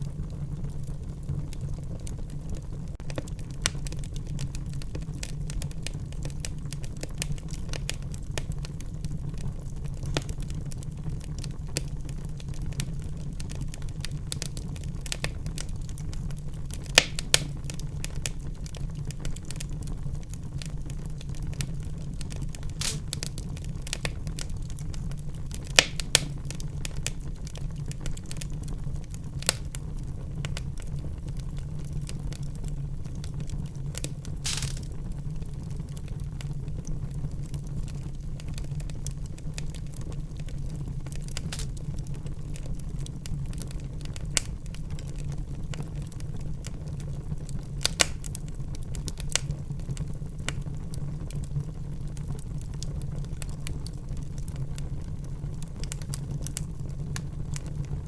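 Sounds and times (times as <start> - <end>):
fireplace fire crackling: 0.0 - 58.0
sharp wood pops: 22.8 - 23.3, 25.8 - 26.4, 34.4 - 34.9.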